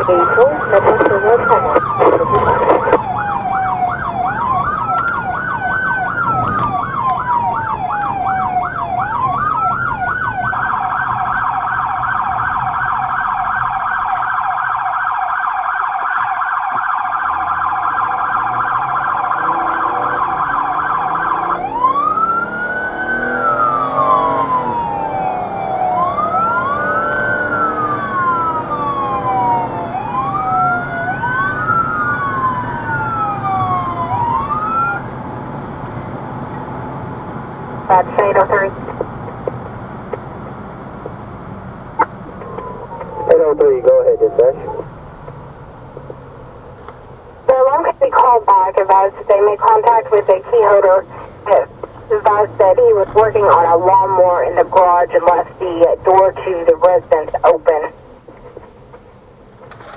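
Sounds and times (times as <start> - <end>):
electronic siren wail and yelp: 0.0 - 35.1, 42.4 - 44.9.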